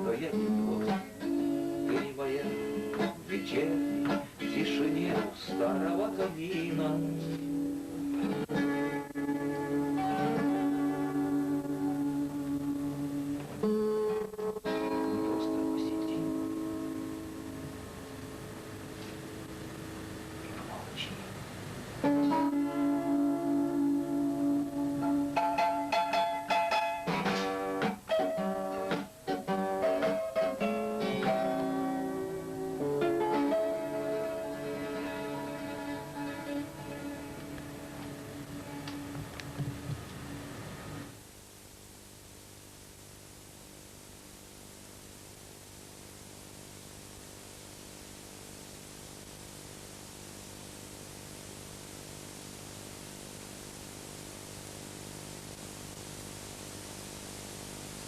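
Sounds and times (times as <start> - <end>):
instrumental guitar plucking: 0.0 - 17.8, 22.0 - 40.4
electrical hum: 0.0 - 58.0
steady hiss: 0.0 - 58.0.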